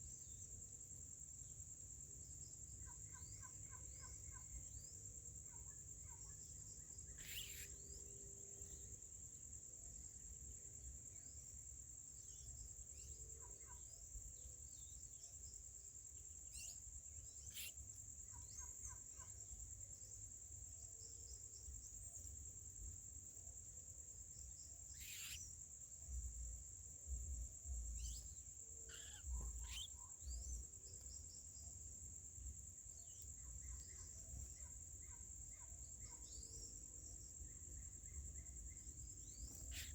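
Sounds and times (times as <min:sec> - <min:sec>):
high insect trill: 0:00.0 - 0:39.9
bird chirps: 0:02.8 - 0:08.9, 0:16.4 - 0:19.4, 0:24.9 - 0:26.5, 0:27.3 - 0:31.6, 0:33.0 - 0:39.9.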